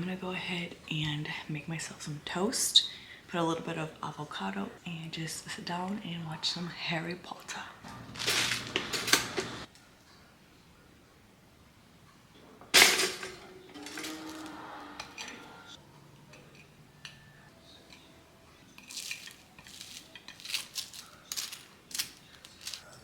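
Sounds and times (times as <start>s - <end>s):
cutlery clinking and scraping: 8.2s - 9.5s, 12.8s - 15.7s, 18.8s - 23.0s
dishes clattering: 12.6s - 15.6s.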